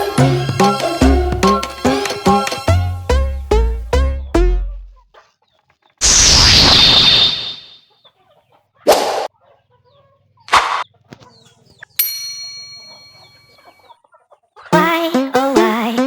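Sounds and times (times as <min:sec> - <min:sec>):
harsh squawks: 0:06.0 - 0:07.8
metallic ding ringing: 0:12.0 - 0:13.6.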